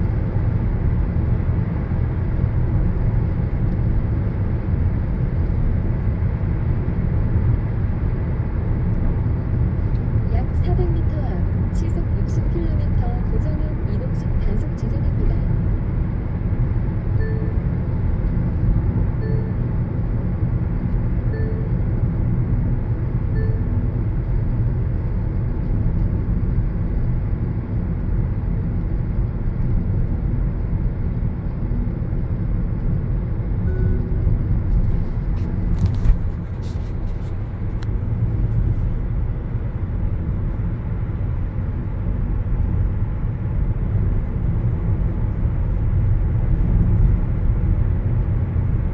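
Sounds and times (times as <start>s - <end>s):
road and engine rumble: 0.0s - 48.9s
short beeps: 17.2s - 17.7s, 19.2s - 19.7s, 21.3s - 21.8s, 23.4s - 23.8s, 33.7s - 34.3s.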